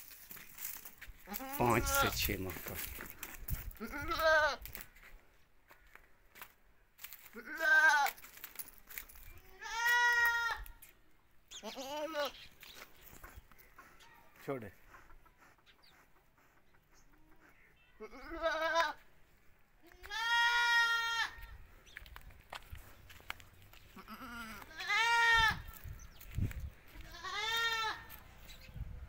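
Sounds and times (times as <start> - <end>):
goat bleating: 1.2 - 2.3, 3.8 - 4.6, 7.4 - 8.2, 9.4 - 10.7, 11.5 - 12.4, 17.8 - 19.0, 19.8 - 21.5, 23.9 - 25.8, 26.9 - 28.2.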